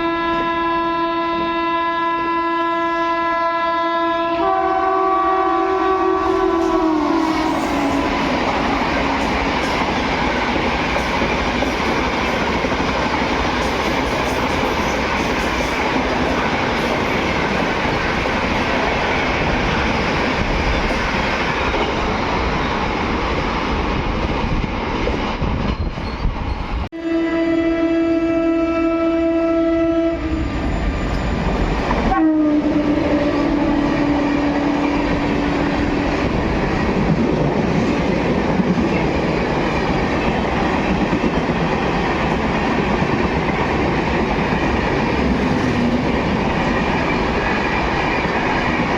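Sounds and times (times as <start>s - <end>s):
locomotive horn blast: 0.0s - 9.2s, 26.9s - 31.4s, 32.0s - 36.0s
train running past: 4.1s - 48.9s.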